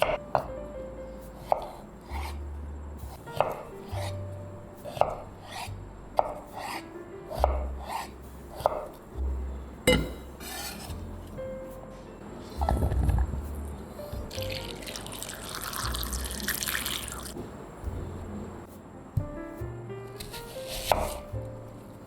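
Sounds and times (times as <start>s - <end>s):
background music: 0.0s - 22.0s
knife chopping on cutting board: 1.4s - 2.4s, 3.1s - 4.2s, 4.8s - 9.0s, 9.9s - 11.1s, 20.2s - 21.4s.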